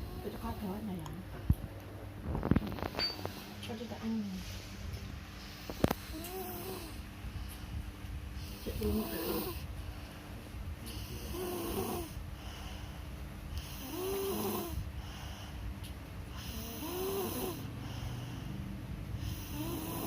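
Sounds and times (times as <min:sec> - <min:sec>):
person snoring: 0:10.9 - 0:12.2, 0:13.6 - 0:14.8, 0:16.4 - 0:18.2, 0:19.2 - 0:20.0.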